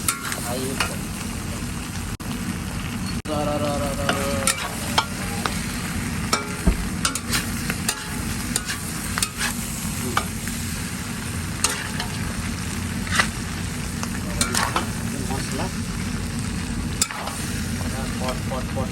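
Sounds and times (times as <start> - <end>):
meat sizzling in hot oil: 0.0 - 18.9
stirring clacks in pan: 6.3 - 9.6.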